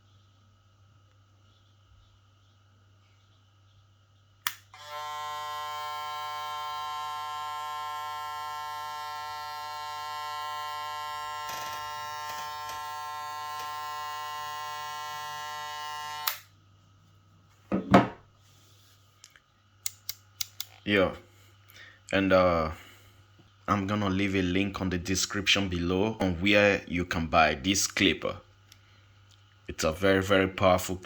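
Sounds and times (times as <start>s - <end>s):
hair clipper switch click: 4.4s - 5.0s, 16.2s - 16.4s
hair clipper buzzing: 4.5s - 16.5s.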